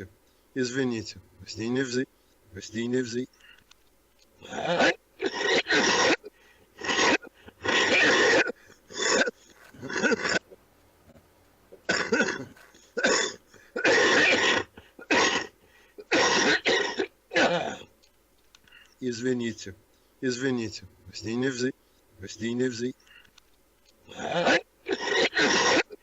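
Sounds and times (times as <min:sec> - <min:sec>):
man coughing: 0:04.4 - 0:10.4, 0:11.8 - 0:17.9, 0:24.1 - 0:26.0.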